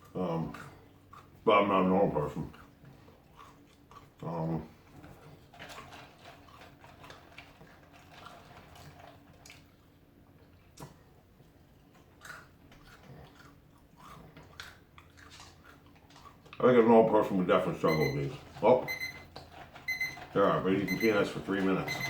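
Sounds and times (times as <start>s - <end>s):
person chewing crunchy peanuts: 0.0s - 16.8s.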